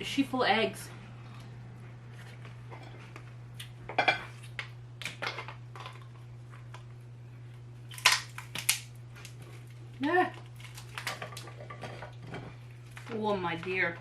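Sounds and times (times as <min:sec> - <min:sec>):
steady low hum: 0:00.0 - 0:14.0
lobster shells cracking: 0:07.8 - 0:12.2.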